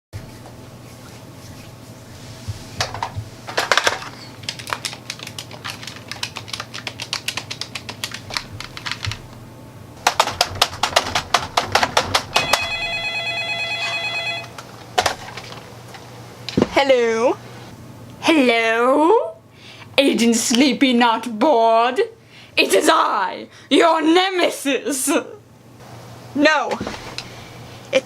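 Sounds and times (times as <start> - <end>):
electronic phone ringtone: 12.4 - 14.6.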